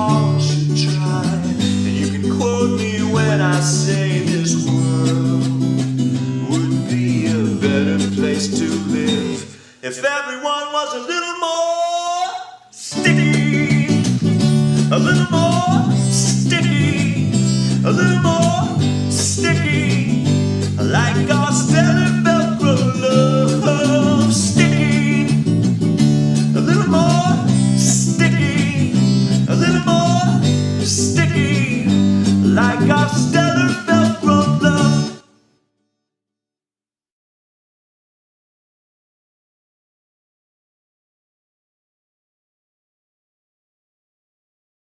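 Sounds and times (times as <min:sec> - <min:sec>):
strummed acoustic guitar: 0:00.0 - 0:09.7, 0:12.8 - 0:35.4.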